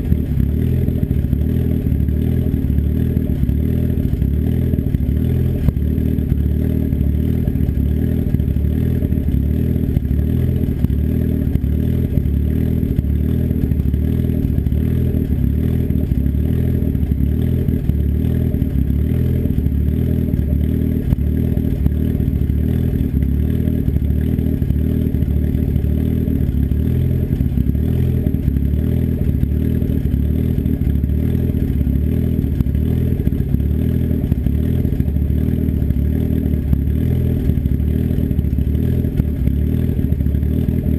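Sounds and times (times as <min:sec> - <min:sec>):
turbocharged engine idling: 0:00.0 - 0:40.9.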